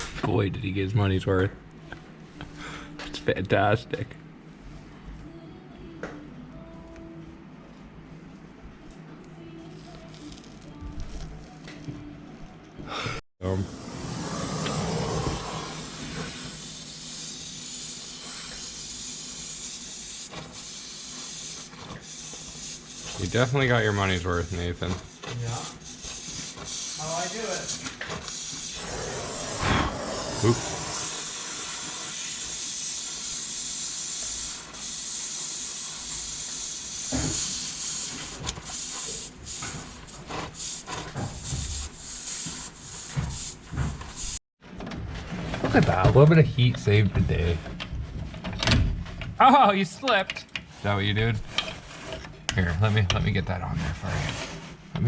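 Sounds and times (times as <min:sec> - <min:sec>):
steady hiss: 0:13.5 - 0:44.4.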